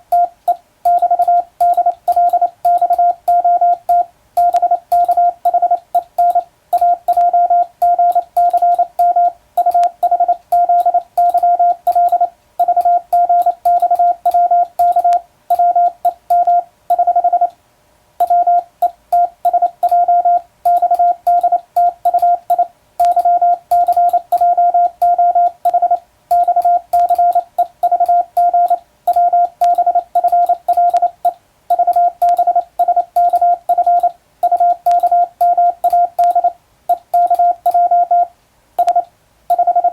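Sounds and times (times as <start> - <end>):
morse code sidetone beeps: 0.0 - 17.5, 18.2 - 39.9
telegraph key clicks: 20.7 - 37.8.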